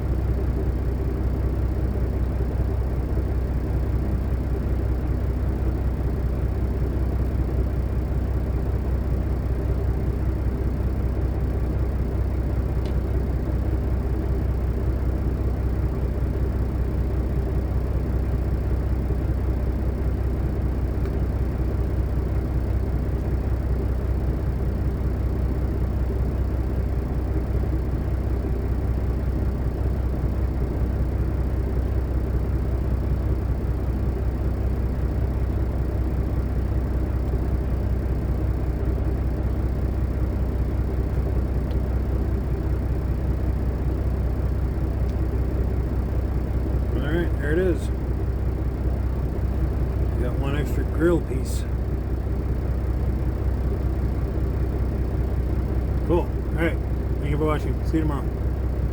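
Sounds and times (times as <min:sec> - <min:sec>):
diesel engine running: 0:00.0 - 0:58.9
faint tick: 0:12.8 - 0:13.0.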